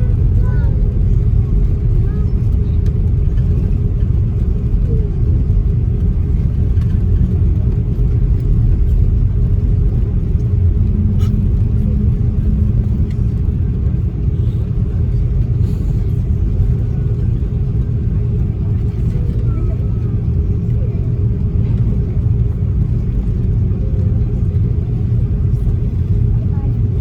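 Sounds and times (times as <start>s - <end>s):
aircraft engines low rumble: 0.0s - 27.0s
faint constant hum: 0.0s - 27.0s.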